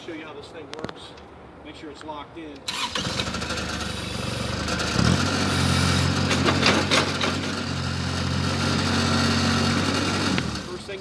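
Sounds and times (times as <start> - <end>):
skid steer engine running: 3.0 - 10.8.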